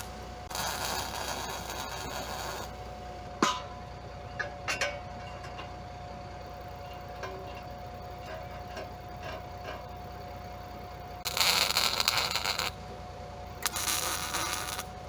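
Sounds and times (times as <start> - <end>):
faint steady hum: 0.0 - 15.0
light metal clinks and taps: 4.3 - 5.8, 6.7 - 9.8.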